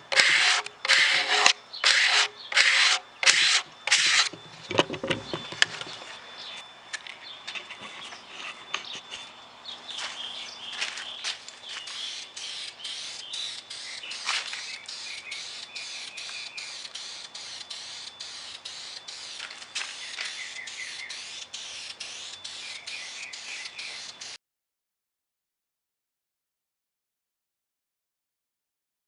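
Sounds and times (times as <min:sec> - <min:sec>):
birds chirping and trilling: 0:00.2 - 0:24.4
pulsing high hiss: 0:11.4 - 0:24.4.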